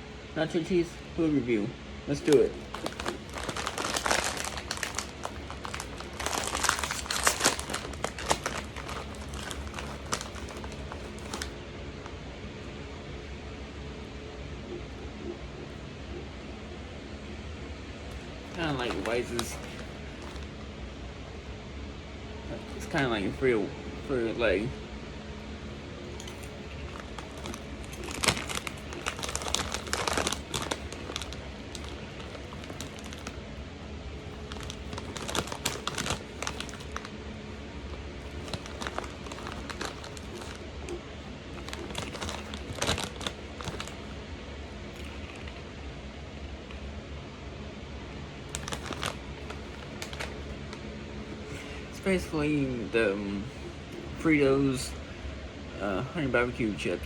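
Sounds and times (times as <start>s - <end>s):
crunchy snacks crackling: 2.1s - 12.2s, 18.1s - 20.8s, 25.8s - 45.7s, 48.4s - 51.6s
snack bag crinkling: 2.1s - 12.2s, 18.1s - 20.7s, 26.0s - 45.7s, 48.4s - 50.9s.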